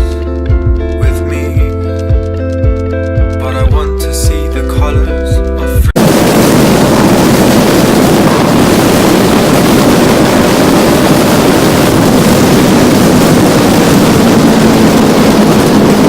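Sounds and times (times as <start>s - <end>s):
motorcycle engine hum: 5.9s - 16.0s
wind rushing over microphone: 5.9s - 16.0s.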